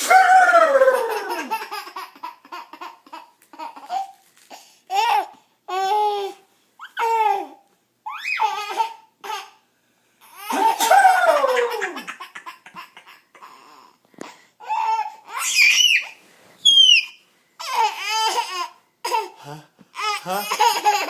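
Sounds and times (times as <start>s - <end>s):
baby squealing: 0.0s - 2.1s, 8.1s - 9.0s, 10.4s - 13.7s, 14.6s - 18.6s
baby laughing: 0.0s - 4.2s, 4.9s - 9.5s, 10.3s - 13.8s, 20.0s - 21.0s.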